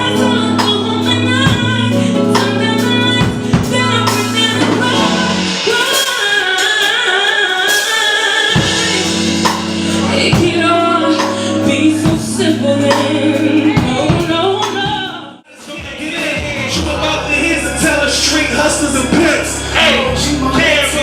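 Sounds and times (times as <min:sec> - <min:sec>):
sustained bass notes: 0:00.0 - 0:05.7, 0:08.6 - 0:15.4, 0:16.2 - 0:21.0
band playing: 0:00.0 - 0:21.0.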